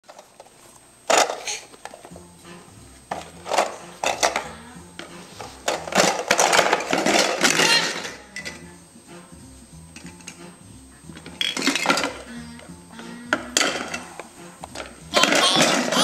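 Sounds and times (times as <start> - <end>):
faint tune: 1.9 - 16.0
toy animals clattering: 3.1 - 8.7, 11.1 - 12.4, 13.6 - 16.0.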